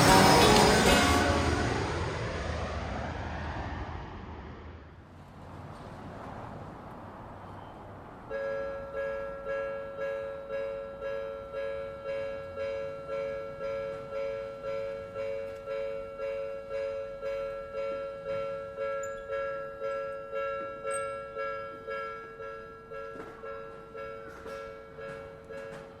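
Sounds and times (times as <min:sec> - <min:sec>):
level-crossing warning bell: 0:00.0 - 0:01.9, 0:07.4 - 0:26.0.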